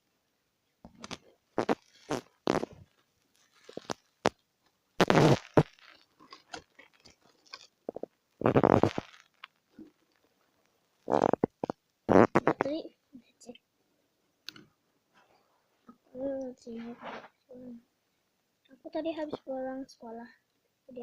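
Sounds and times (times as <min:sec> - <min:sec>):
noisy bursts: 0:05.0 - 0:05.7, 0:07.9 - 0:09.1.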